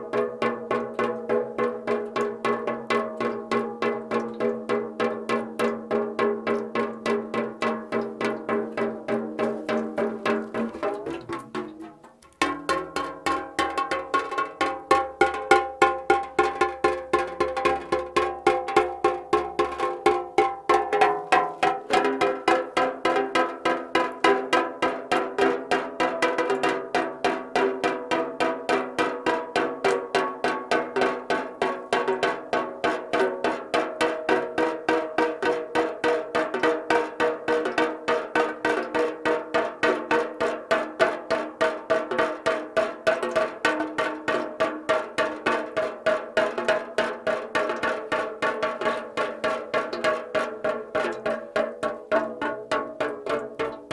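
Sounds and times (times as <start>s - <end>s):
raindrops tapping on a metal can: 0.0s - 53.9s.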